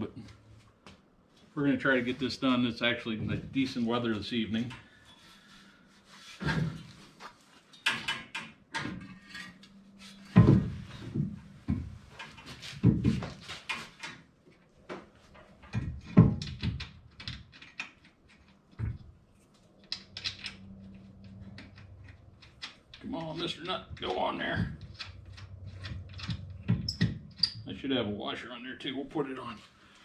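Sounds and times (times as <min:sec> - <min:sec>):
metal knocks and clanks: 0:10.2 - 0:14.2, 0:15.4 - 0:19.1, 0:19.8 - 0:27.7.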